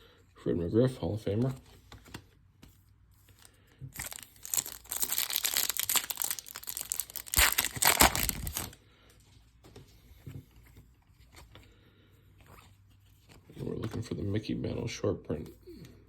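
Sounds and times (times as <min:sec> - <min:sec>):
foil wrapper crinkling and tearing: 0:04.0 - 0:08.8.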